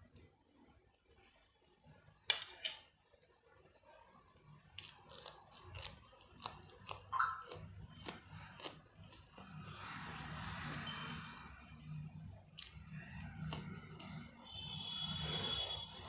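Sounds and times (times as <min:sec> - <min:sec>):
crunchy bites: 0:04.7 - 0:09.3
wet chewing and mouth clicks: 0:04.8 - 0:09.2.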